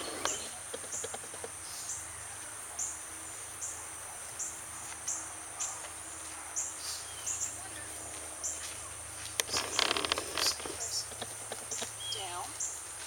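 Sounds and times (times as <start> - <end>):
high insect drone: 0.0 - 13.0.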